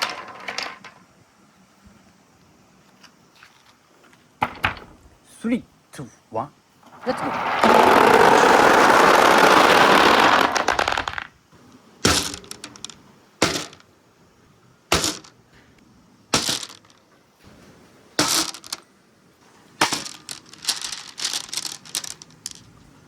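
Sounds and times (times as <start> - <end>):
single marbles clacking on metal: 0.0 - 1.0, 19.8 - 22.7
marbles rattling down metal ramp: 0.0 - 1.1, 6.8 - 11.3, 12.1 - 13.8, 15.0 - 15.4, 16.4 - 17.0, 18.2 - 18.8, 19.8 - 22.7.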